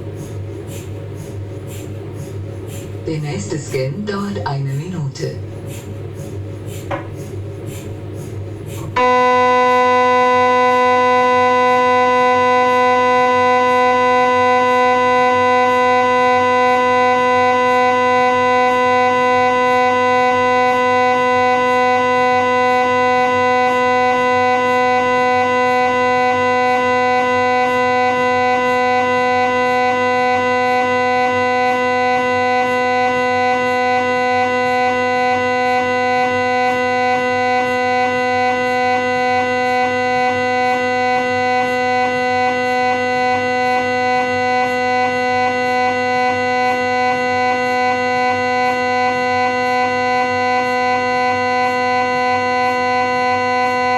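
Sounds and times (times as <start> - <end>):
mri scanner buzzing drone: 0.0 - 53.9.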